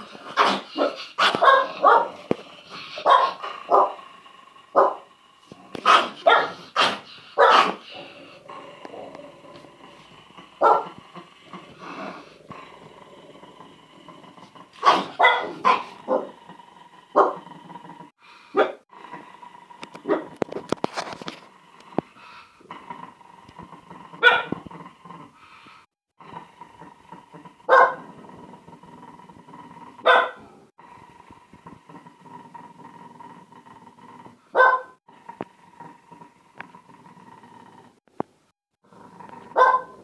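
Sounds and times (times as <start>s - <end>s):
dogs barking: 0.3s - 2.2s, 3.0s - 4.0s, 4.7s - 5.0s, 5.8s - 7.8s, 10.6s - 11.0s, 14.8s - 16.3s, 17.2s - 17.4s, 24.2s - 24.6s, 27.6s - 28.0s, 30.0s - 30.4s, 34.5s - 35.0s, 39.5s - 40.0s.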